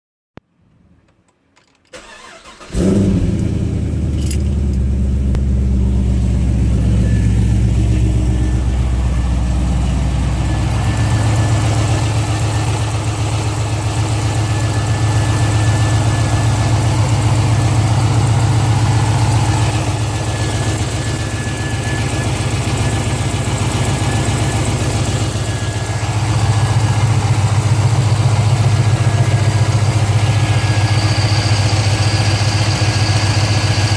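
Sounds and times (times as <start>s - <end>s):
car engine cranking: 1.8s - 33.9s
car engine idling with a tick: 3.3s - 6.6s.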